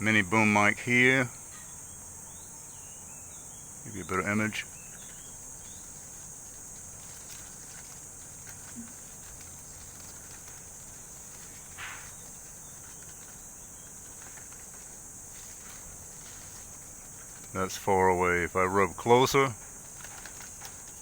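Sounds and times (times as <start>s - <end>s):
faint rustling of foliage: 0.0s - 21.0s
insects chirring: 0.0s - 21.0s
leaves swish: 5.2s - 18.0s.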